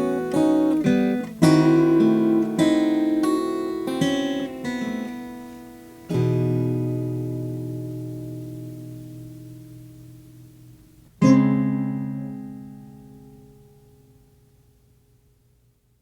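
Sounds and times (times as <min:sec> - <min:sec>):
acoustic guitar chords: 0:00.0 - 0:15.5.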